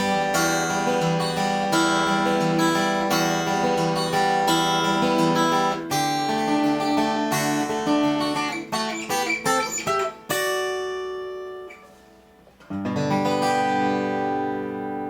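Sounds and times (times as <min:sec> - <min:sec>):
acoustic guitar: 0:00.0 - 0:15.0.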